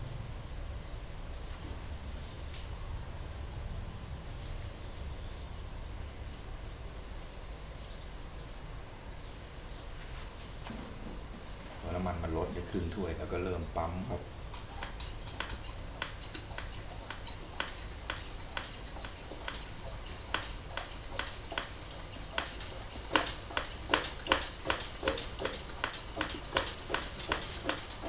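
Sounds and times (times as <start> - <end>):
lantern hand pump clicking: 14.4 - 28.0.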